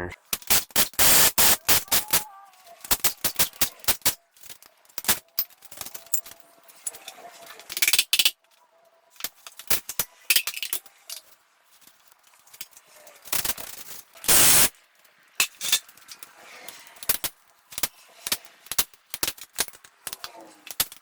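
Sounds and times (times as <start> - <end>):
metal tools clinking: 4.3 - 8.3, 15.4 - 21.0.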